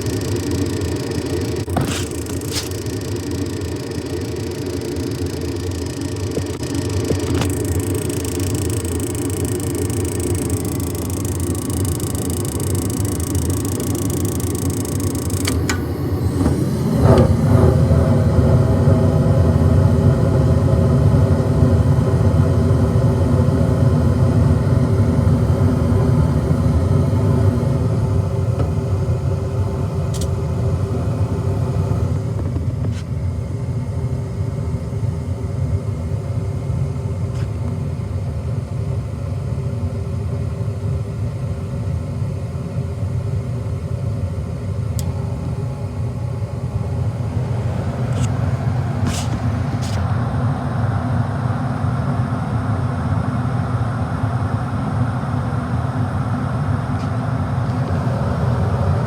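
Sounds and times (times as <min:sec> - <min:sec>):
sharp clicks: 0:00.0 - 0:15.9
gas furnace rumble and hum: 0:00.0 - 0:59.0.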